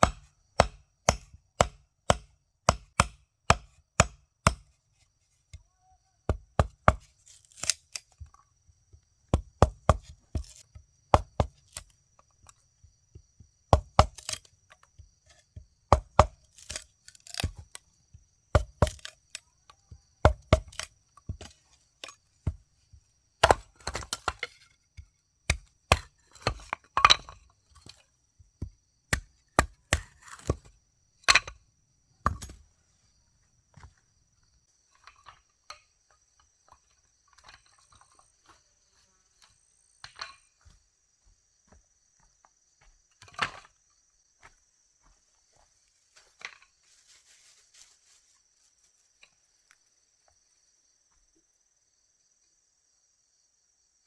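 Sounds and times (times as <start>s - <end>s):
blade chopping strikes: 0.0s - 4.7s.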